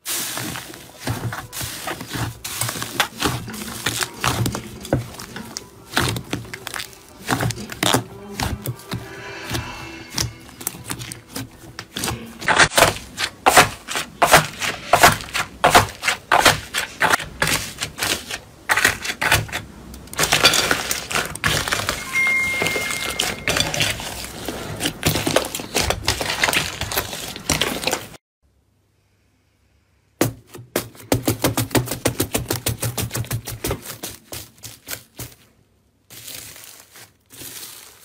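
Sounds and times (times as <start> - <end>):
crunchy slime crackling: 0.0 - 8.8, 32.5 - 38.0.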